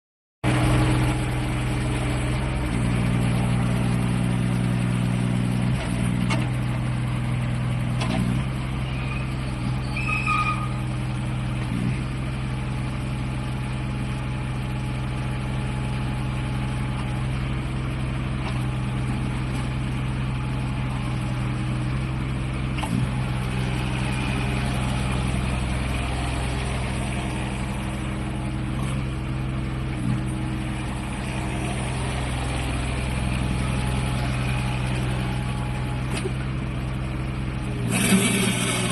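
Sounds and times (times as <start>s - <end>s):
excavator diesel engine running: 0.4s - 38.9s
brief squeaks: 8.8s - 10.8s.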